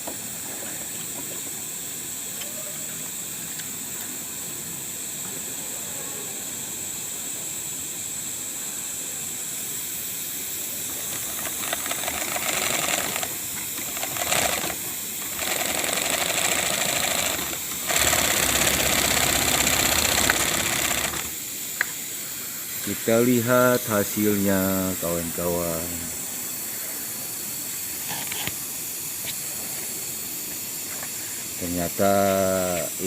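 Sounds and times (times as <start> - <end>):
steady hiss: 0.0 - 33.0
sewing machine running: 11.0 - 21.4.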